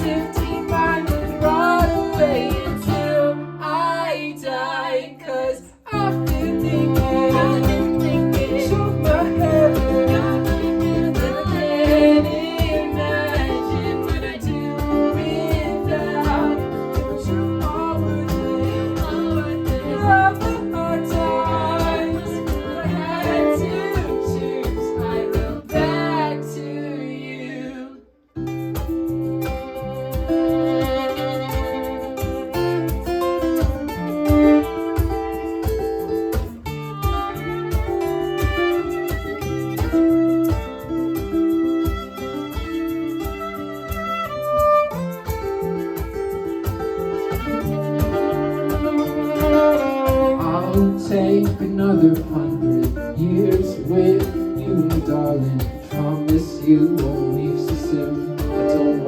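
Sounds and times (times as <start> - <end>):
percussion beat: 0.0 - 3.3, 5.9 - 26.4, 28.4 - 59.0
acoustic guitars strumming: 0.0 - 59.0
violin melody: 5.9 - 26.5, 29.1 - 51.5.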